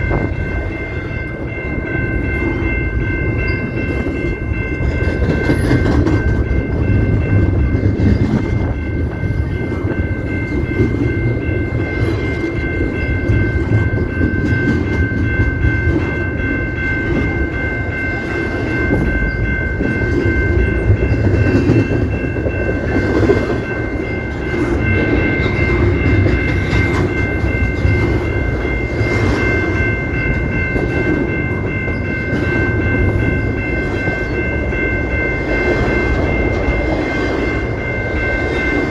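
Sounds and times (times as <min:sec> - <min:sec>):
high-pitched ringing tone: 0:00.0 - 0:38.9
train rumbling past: 0:00.0 - 0:38.9.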